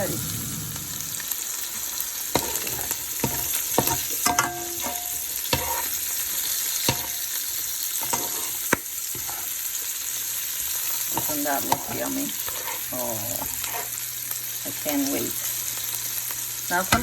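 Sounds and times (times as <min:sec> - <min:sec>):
food sizzling in a frying pan: 0:00.0 - 0:17.0
utensil scraping a pan: 0:02.4 - 0:06.0, 0:08.0 - 0:09.5, 0:11.2 - 0:14.0.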